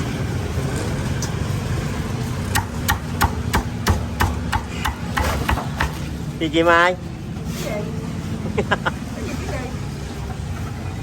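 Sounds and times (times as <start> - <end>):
cleaver chopping on a block: 2.5 - 6.0.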